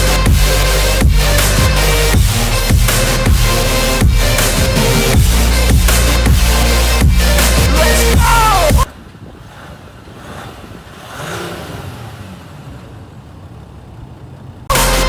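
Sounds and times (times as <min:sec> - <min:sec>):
music: 0:00.0 - 0:08.9, 0:14.7 - 0:15.0
vehicle engine: 0:00.0 - 0:08.9, 0:09.6 - 0:15.0.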